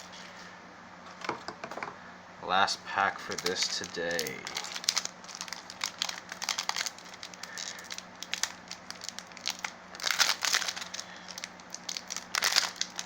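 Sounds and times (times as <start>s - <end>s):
foil wrapper crinkling: 3.2s - 13.0s.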